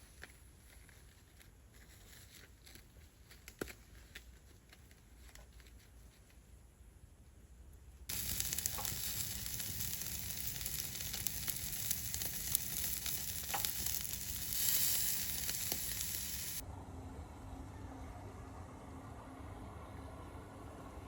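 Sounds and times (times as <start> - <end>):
food sizzling in a pan: 8.1 - 16.6.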